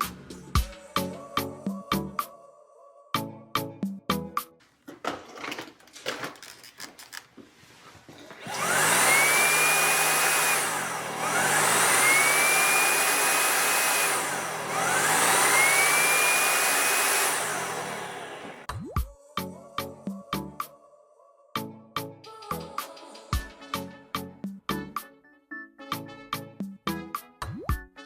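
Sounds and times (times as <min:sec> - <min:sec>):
vacuum motor whine: 0:08.3 - 0:18.7
rush of suction: 0:08.5 - 0:18.7.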